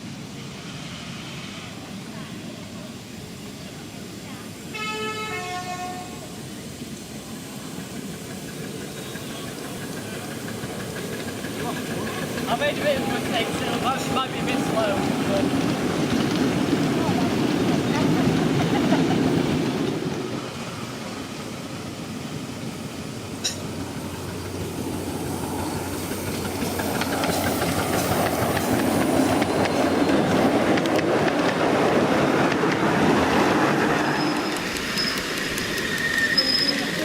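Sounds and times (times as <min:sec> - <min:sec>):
miniature train wheels clicking: 0:08.1 - 0:14.6, 0:34.2 - 0:37.0.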